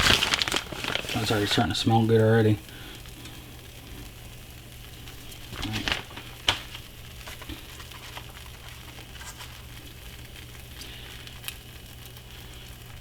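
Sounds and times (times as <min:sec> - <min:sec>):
crackles: 0:00.0 - 0:13.0
sandwich sizzling in a pan: 0:00.0 - 0:13.0.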